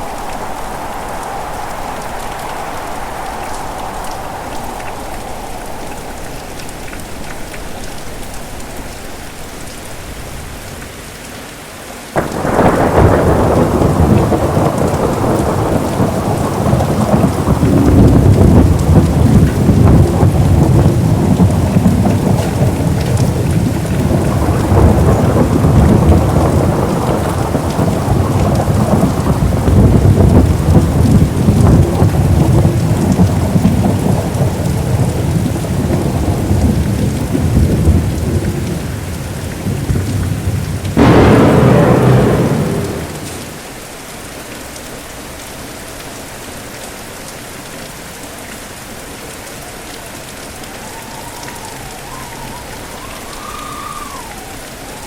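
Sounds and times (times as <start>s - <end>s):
rolling thunder: 0.0s - 8.2s, 12.2s - 43.8s
steady rain: 0.0s - 55.0s
sharp thunderclap: 12.2s - 38.8s, 39.6s - 43.8s.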